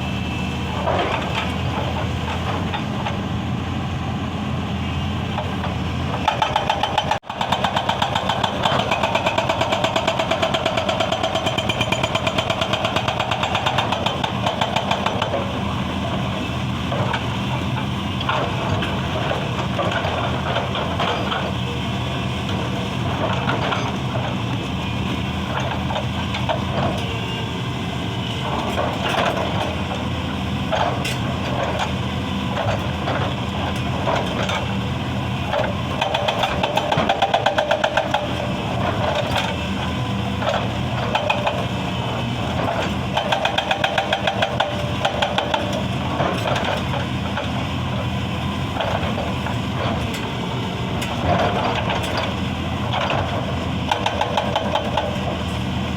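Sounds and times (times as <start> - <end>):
excavator diesel engine running: 0.0 - 55.9
hydraulic breaker hammering rock: 5.4 - 17.3, 35.4 - 48.0, 51.1 - 55.6.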